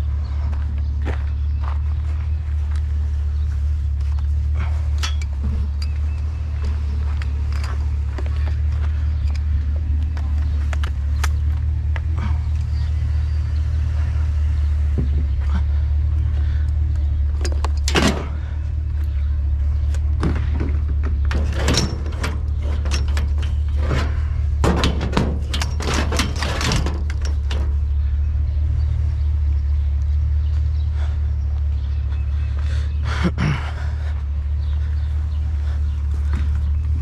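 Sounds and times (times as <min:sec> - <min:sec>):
vehicle engine idling: 0:00.0 - 0:37.0
knocks and clanks of items loaded: 0:17.3 - 0:28.0.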